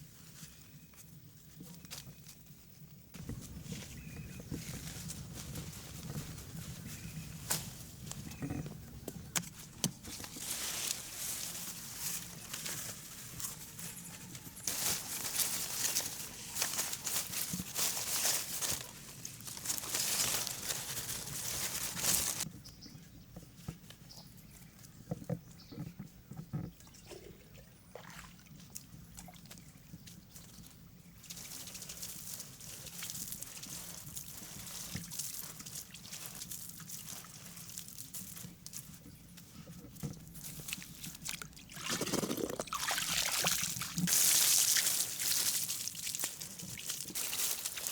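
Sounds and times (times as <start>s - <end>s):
water pouring and sloshing: 26.8s - 29.6s, 40.5s - 47.9s.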